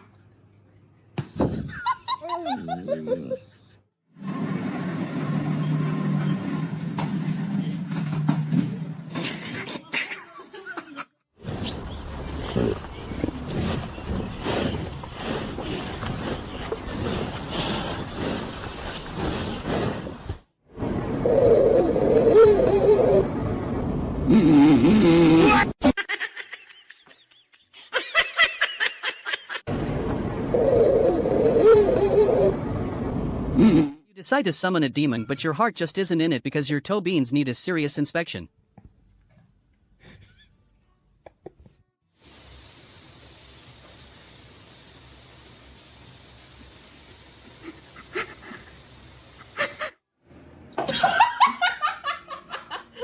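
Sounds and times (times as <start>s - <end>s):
person laughing: 1.6s - 3.6s, 47.6s - 48.8s, 49.4s - 50.0s
person laughing hard: 1.7s - 3.5s
steady hiss: 42.2s - 49.9s.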